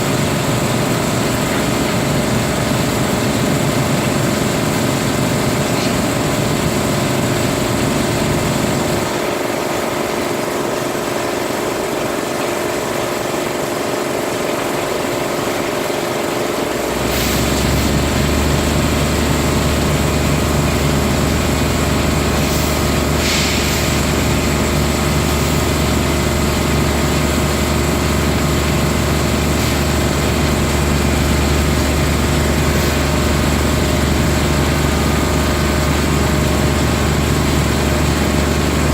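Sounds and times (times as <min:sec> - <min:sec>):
industrial machinery drone: 0:00.0 - 0:38.9
short hisses: 0:17.1 - 0:17.6, 0:22.5 - 0:24.0.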